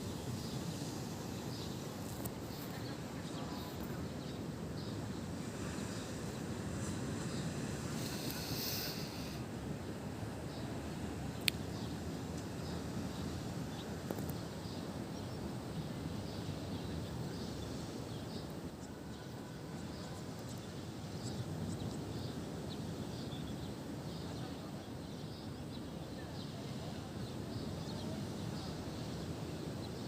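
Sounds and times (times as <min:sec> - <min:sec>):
sea surf: 0:00.0 - 0:13.7
wind: 0:00.0 - 0:30.0.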